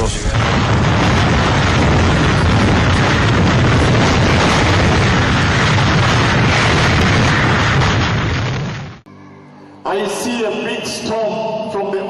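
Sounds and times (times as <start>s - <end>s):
wind buffeting microphone: 0.0s - 8.8s.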